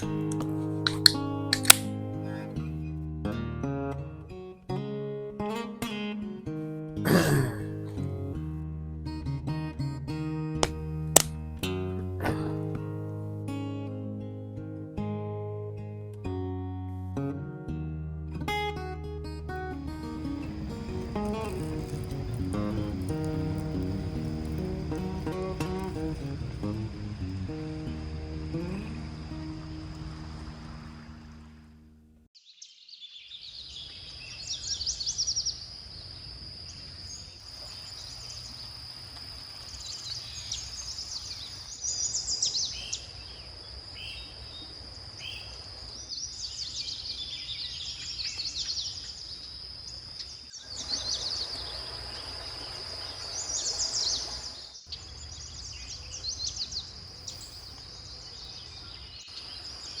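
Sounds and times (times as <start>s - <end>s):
birds chirping: 20.1s - 26.8s, 39.8s - 60.0s.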